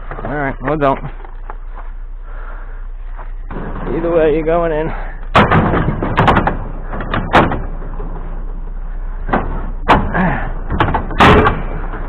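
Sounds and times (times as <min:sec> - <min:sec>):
scrap metal banging and clattering: 0:03.4 - 0:04.2, 0:05.3 - 0:12.0
knocks: 0:05.3 - 0:08.4, 0:09.3 - 0:12.0.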